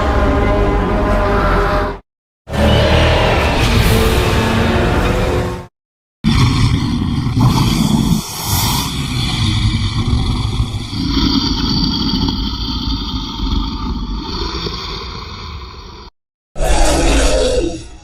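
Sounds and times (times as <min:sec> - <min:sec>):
creature engine-like rumble: 0:06.2 - 0:18.0.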